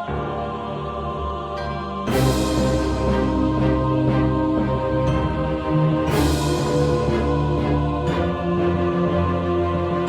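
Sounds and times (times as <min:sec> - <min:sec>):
orchestral sustained chords: 0:00.0 - 0:10.0.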